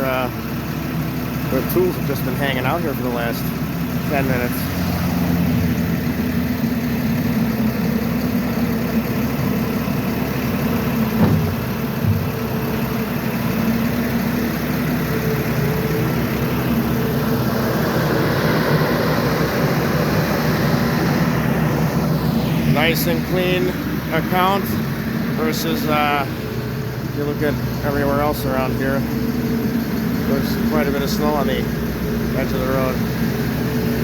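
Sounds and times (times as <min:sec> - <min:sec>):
diesel engine running: 0:00.0 - 0:34.0
short engine knock: 0:10.5 - 0:13.4.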